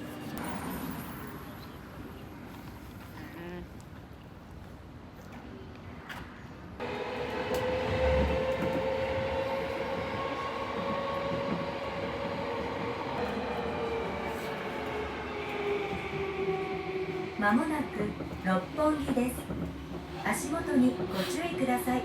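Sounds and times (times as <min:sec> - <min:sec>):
subway train rumbling: 0:00.0 - 0:22.0
train motor whine: 0:06.8 - 0:19.2.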